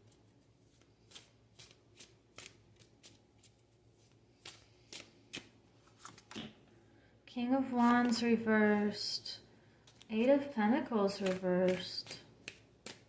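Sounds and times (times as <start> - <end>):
cards shuffled by hand: 0.1 - 6.6, 9.8 - 10.3, 11.0 - 13.0.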